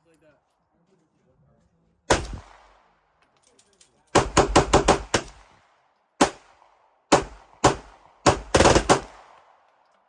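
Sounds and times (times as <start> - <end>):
gunshots: 2.1 - 2.9, 4.1 - 9.6.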